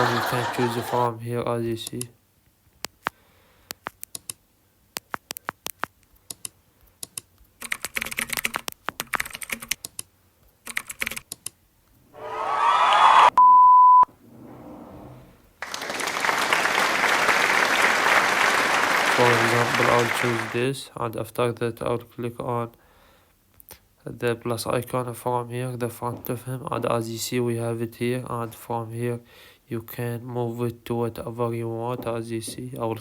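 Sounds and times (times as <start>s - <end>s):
keyboard typing clicks: 5.0s - 11.6s
swirling sound effect: 12.2s - 13.4s
one-tone beep: 13.4s - 14.1s
applause-like hiss: 15.6s - 20.7s.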